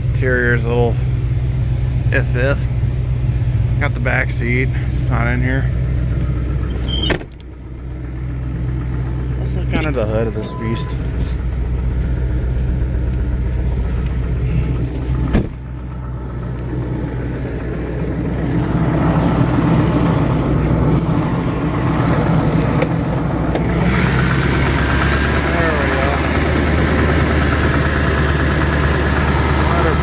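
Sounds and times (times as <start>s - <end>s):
diesel engine idling: 0.0s - 30.0s.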